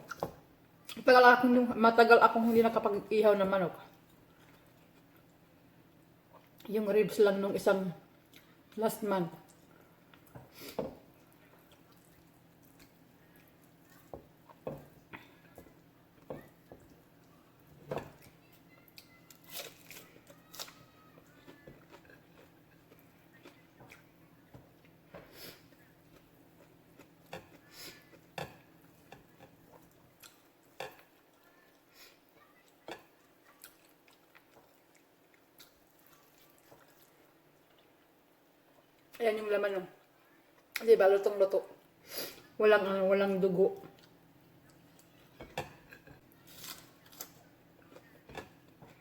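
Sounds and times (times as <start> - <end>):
person chewing food: 9.4 - 39.1, 43.8 - 49.0.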